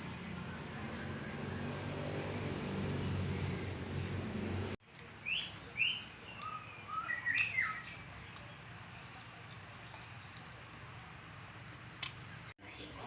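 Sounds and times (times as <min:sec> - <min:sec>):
faint background noise: 0:00.0 - 0:13.0
bird chirping: 0:05.2 - 0:09.5.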